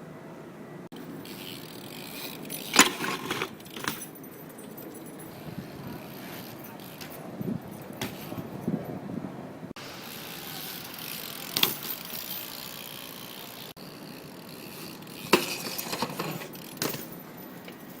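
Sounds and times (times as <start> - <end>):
bike hub ratchet ticking: 1.0 - 4.0, 9.8 - 17.8
tyres hissing: 9.8 - 17.8.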